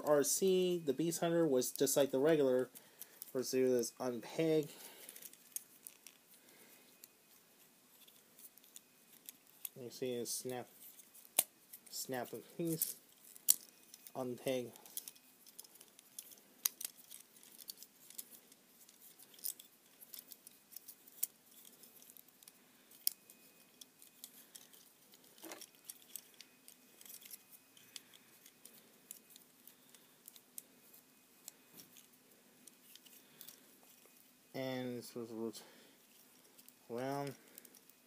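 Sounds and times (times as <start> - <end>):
plastic toy parts clicking: 14.9 - 23.2.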